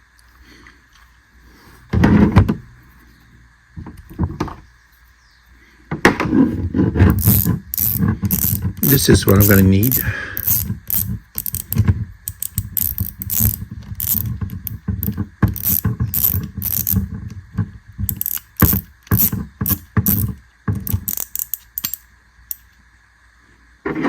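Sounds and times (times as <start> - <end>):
fishing reel clicks and clacks: 7.2 - 17.1, 18.1 - 22.7.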